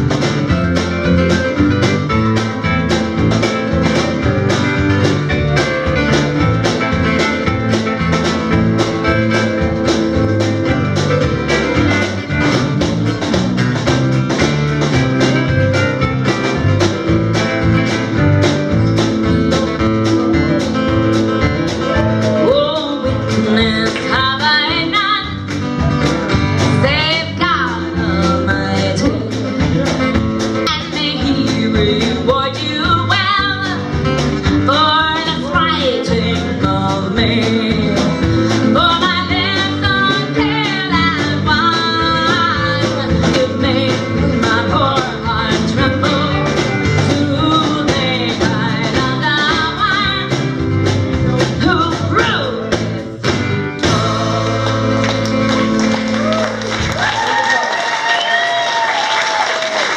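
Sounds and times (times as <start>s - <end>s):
live band playing: 0.0s - 59.9s
person singing: 21.7s - 25.6s, 26.6s - 34.0s, 34.6s - 50.5s.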